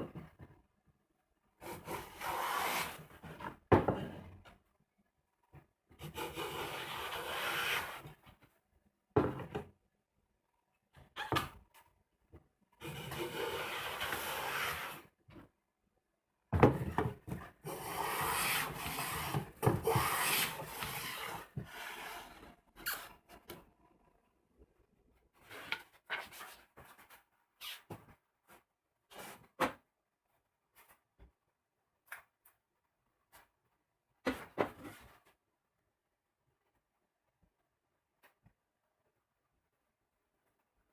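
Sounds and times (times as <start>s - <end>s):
hand tool scraping wood: 1.6s - 3.0s, 6.1s - 8.0s, 12.8s - 15.0s, 17.6s - 22.4s.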